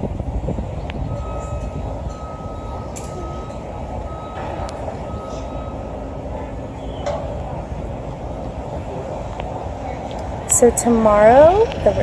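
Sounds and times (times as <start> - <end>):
low outdoor rumble: 0.0 - 12.0
reversing alarm beeping: 1.0 - 7.2.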